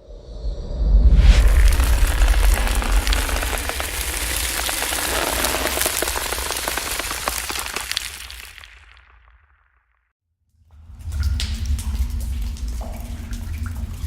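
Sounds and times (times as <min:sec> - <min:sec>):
deep rumble: 0:00.5 - 0:08.2
dense crackling patter: 0:01.4 - 0:09.2.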